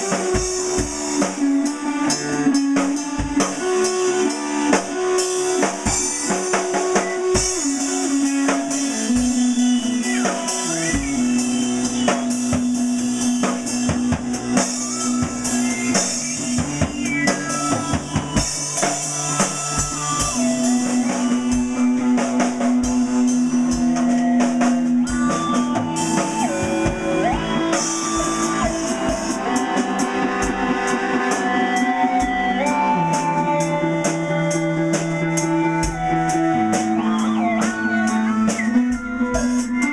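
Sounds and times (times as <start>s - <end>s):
drum kit beat: 0.0s - 39.9s
guitar and bass notes: 0.0s - 39.9s.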